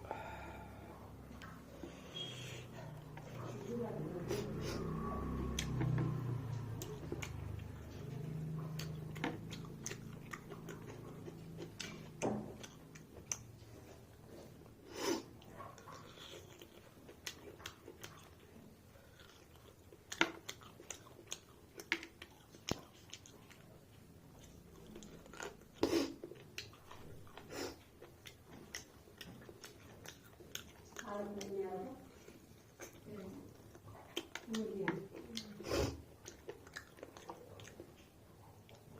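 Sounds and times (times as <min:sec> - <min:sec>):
person chewing food: 0:00.0 - 0:38.9
wet mouth clicks: 0:04.3 - 0:13.6, 0:32.7 - 0:38.0.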